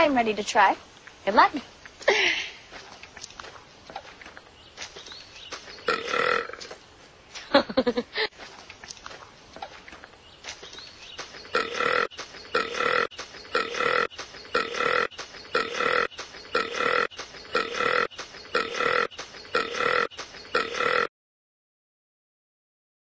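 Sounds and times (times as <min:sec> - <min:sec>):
woman burping: 0:05.9 - 0:06.6, 0:11.6 - 0:21.1.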